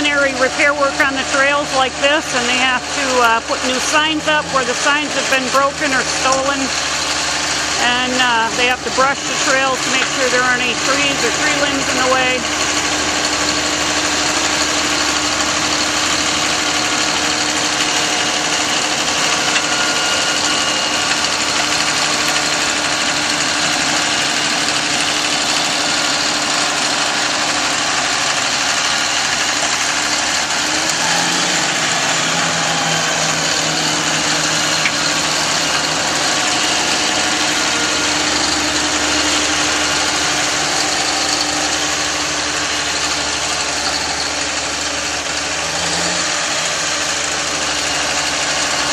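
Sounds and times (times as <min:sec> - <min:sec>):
tractor engine running: 0:00.0 - 0:48.9.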